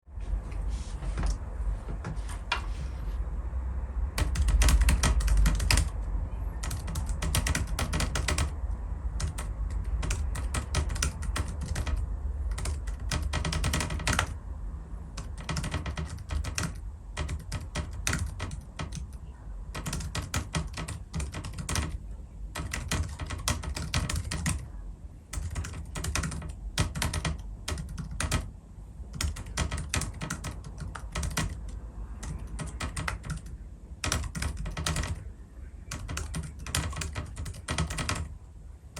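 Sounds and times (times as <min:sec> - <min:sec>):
keyboard typing: 0:04.1 - 0:14.4, 0:15.1 - 0:24.7, 0:25.3 - 0:38.4.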